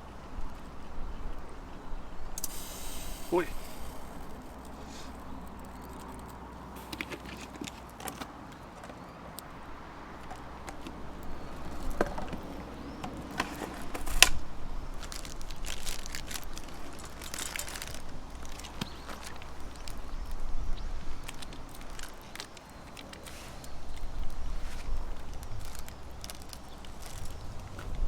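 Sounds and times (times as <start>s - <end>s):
faint steady background noise: 0.0s - 28.0s
light clicks and clatter: 3.6s - 9.5s.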